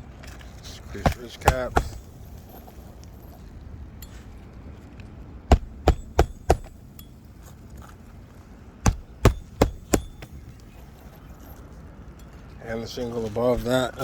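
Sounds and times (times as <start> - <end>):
hammer striking shingle roof: 0.8 - 2.2, 5.5 - 6.9, 8.9 - 10.4.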